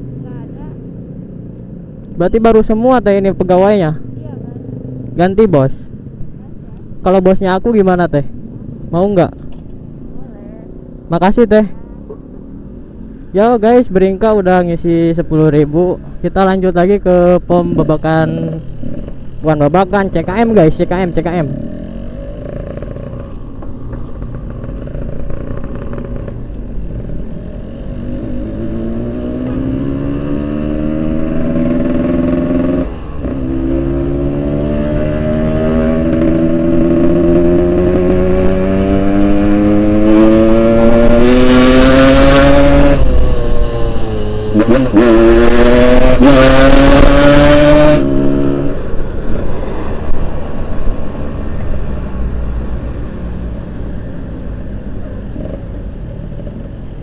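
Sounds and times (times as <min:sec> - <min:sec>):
motorcycle engine revving: 0:17.7 - 0:52.4, 0:53.1 - 0:57.0.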